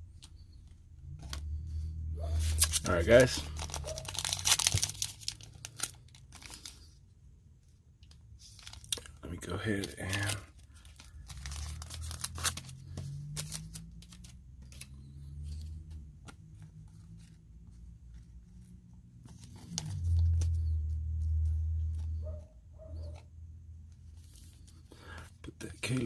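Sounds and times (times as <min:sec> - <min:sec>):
cards being handled: 0:00.0 - 0:07.0, 0:08.0 - 0:22.4, 0:23.0 - 0:26.0
foil wrapper crinkling and tearing: 0:02.4 - 0:07.0, 0:08.4 - 0:14.9.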